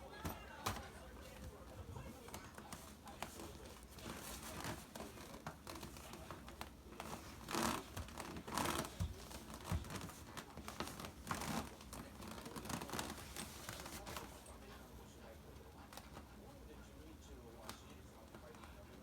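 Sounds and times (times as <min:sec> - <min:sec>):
rustling and crinkling: 0:00.1 - 0:14.7.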